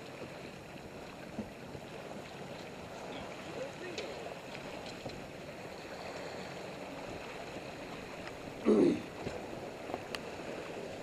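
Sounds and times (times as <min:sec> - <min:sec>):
water rushing along a hull: 0:00.0 - 0:11.0.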